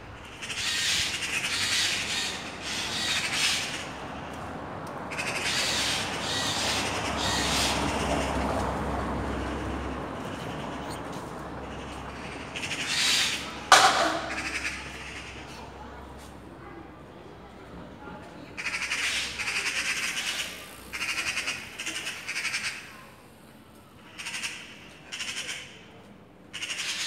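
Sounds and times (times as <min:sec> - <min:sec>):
magpies chattering: 0:05.1 - 0:15.8, 0:18.6 - 0:23.4.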